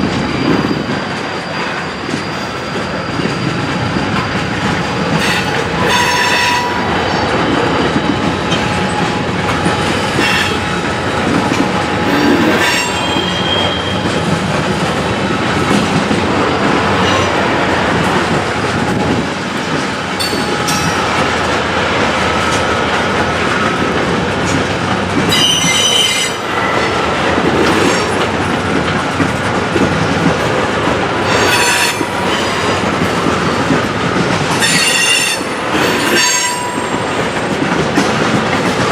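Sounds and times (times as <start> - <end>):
train wheels rumbling on rail: 0.0 - 38.9
wheel flanges squealing: 0.2 - 14.5.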